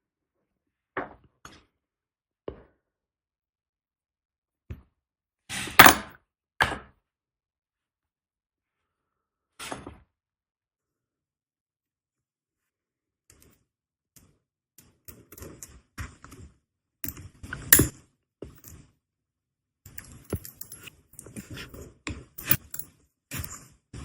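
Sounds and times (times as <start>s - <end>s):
small metal clicks and clinks: 19.9s - 21.8s, 22.4s - 23.5s.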